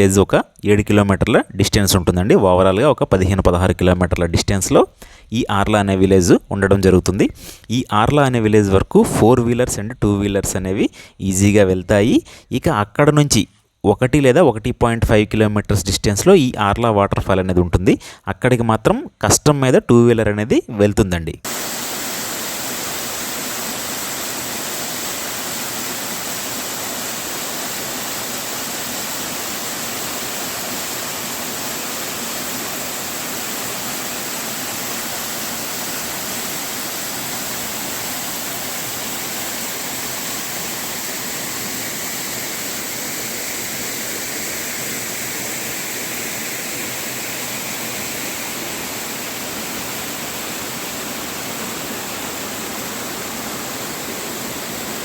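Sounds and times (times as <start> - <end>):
waterfall rushing: 21.5 - 55.0.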